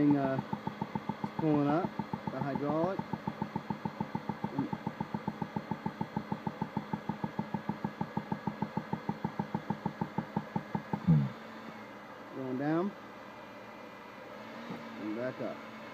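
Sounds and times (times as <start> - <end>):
hydraulic cable puller rapid knocking: 0.0 - 11.2.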